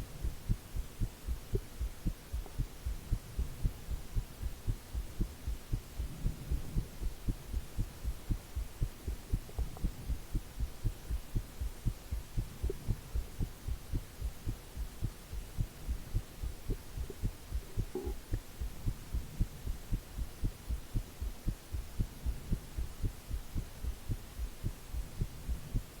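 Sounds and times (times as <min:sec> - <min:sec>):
faint white noise hiss: 0:00.0 - 0:26.0
heartbeat thuds: 0:00.0 - 0:26.0.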